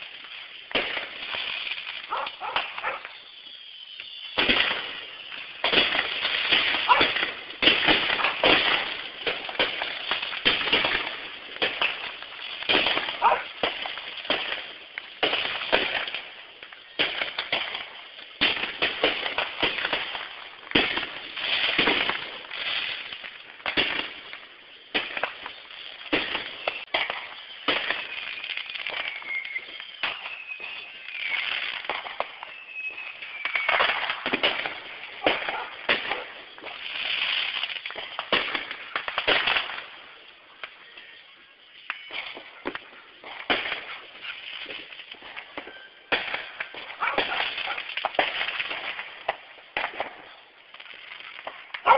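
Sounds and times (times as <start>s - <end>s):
firework whistles falling in pitch: 0.0s - 8.6s, 25.0s - 39.5s, 40.5s - 48.1s
fireworks bangs and crackling: 0.0s - 51.9s.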